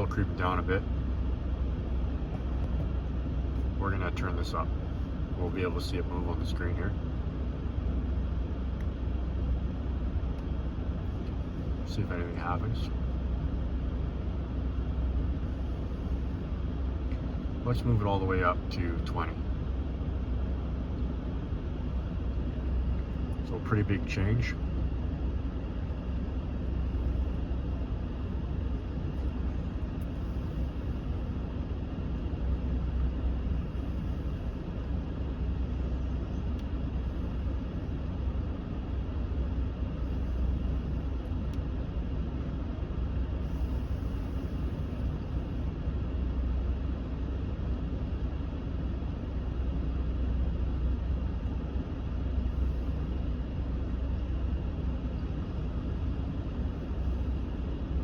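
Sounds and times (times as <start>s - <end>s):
cabin blower fan rushing: 0.0s - 58.0s
engine idling hum: 0.0s - 58.0s.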